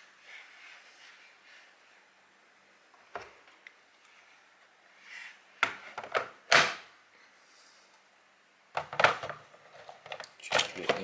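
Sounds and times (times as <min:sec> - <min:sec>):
soft rustle: 0:00.0 - 0:02.4.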